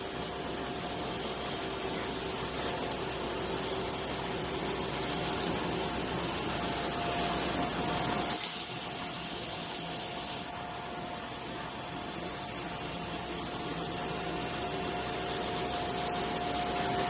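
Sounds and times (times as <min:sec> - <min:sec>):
machine hissing whir: 0:00.0 - 0:17.0
brief sharp hiss: 0:08.1 - 0:10.5.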